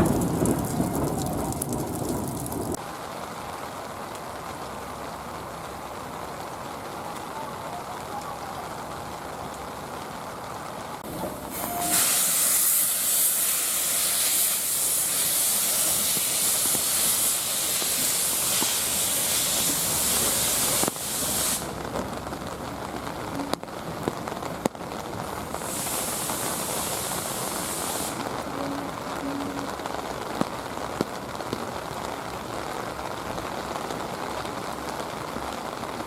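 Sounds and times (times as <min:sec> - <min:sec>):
steady rain: 0:00.0 - 0:36.0
steam locomotive hissing steam: 0:11.2 - 0:21.8, 0:25.6 - 0:28.2.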